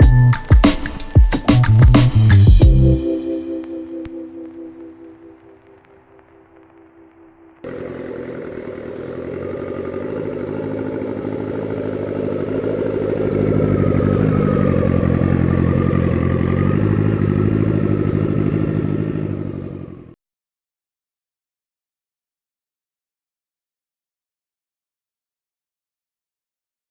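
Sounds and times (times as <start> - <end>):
motorcycle engine running: 0.0 - 3.0, 7.6 - 20.2.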